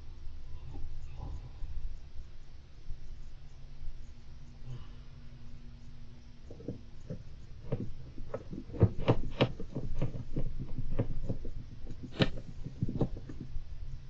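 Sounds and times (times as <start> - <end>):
hamster clicking and tapping in cage: 6.5 - 13.6.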